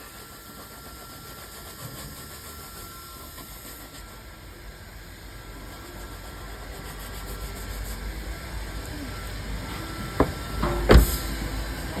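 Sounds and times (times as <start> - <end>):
loud knock: 10.2 - 11.3.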